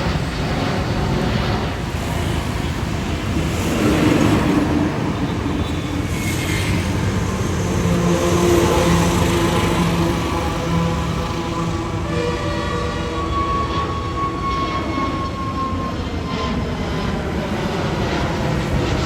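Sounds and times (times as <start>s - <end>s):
jet engines roaring: 0.0s - 19.0s.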